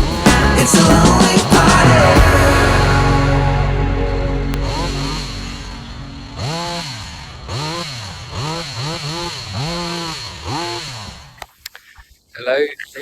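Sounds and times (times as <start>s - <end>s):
hedge trimmer engine revving: 0.0s - 11.4s.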